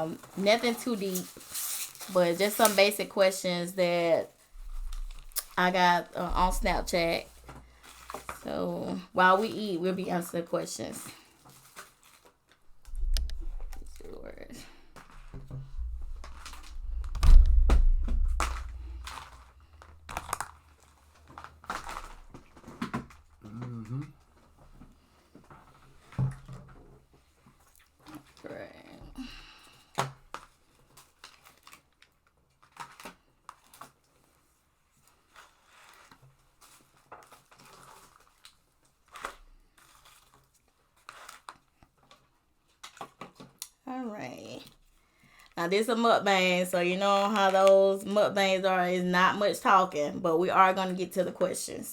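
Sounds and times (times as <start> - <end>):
food packaging crinkling: 0.0 - 5.8, 6.5 - 8.6, 11.1 - 14.2, 17.8 - 23.4, 29.9 - 43.8
heavy low bumping rumble: 4.6 - 7.7, 12.7 - 20.6
plastic containers clicking and rustling: 18.3 - 23.4, 35.9 - 43.6.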